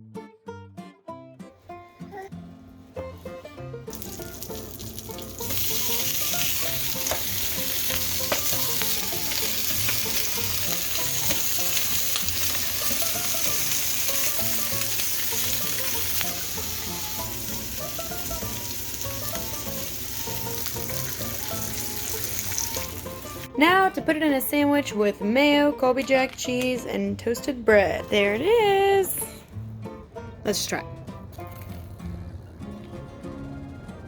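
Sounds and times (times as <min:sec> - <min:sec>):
meat sizzling in a pan: 0:03.9 - 0:23.5.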